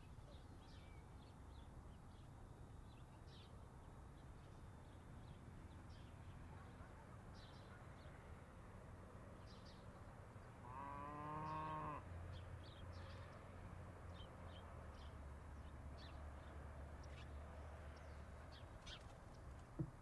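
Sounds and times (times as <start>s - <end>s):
small birds chirping: 0.0s - 8.2s, 14.1s - 20.0s
cow mooing: 10.6s - 12.0s.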